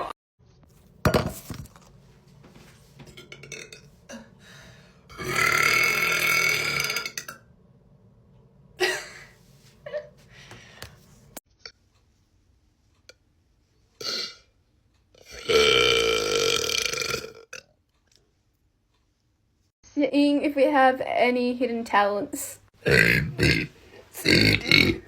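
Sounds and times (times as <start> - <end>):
woman burping: 5.1 - 7.3, 22.8 - 25.0.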